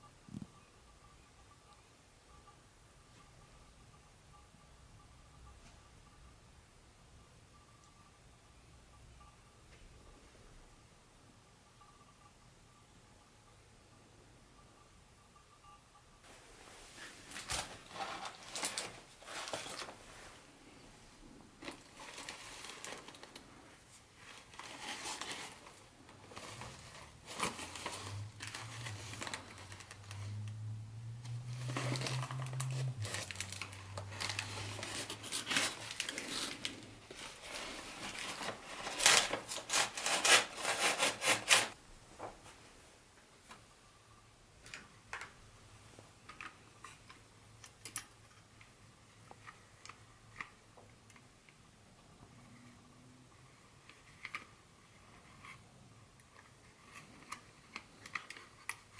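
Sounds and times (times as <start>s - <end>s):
wrapping crinkling and tearing: 17.3s - 20.3s, 21.6s - 23.5s, 24.2s - 30.5s, 31.3s - 41.8s.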